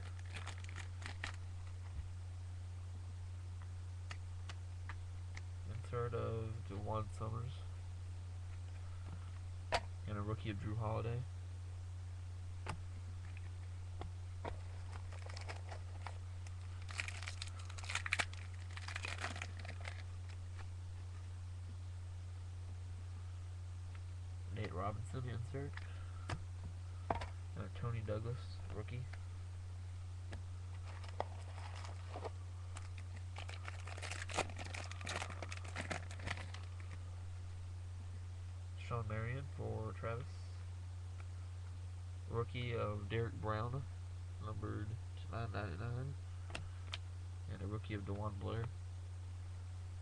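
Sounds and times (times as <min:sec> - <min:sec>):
foil wrapper crinkling and tearing: 0:00.0 - 0:01.8, 0:14.6 - 0:20.7, 0:30.8 - 0:37.0
low electrical hum: 0:00.0 - 0:50.0.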